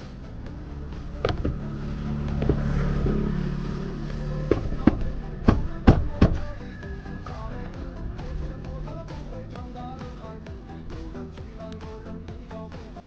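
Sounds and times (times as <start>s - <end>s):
background music: 0.0s - 13.0s
sharp plastic knocks and snaps: 1.2s - 1.6s.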